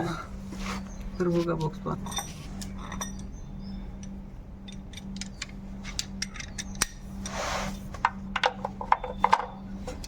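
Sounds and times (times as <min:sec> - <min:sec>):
steady low hum: 0:00.0 - 0:10.0
metal tools clinking: 0:01.6 - 0:07.0.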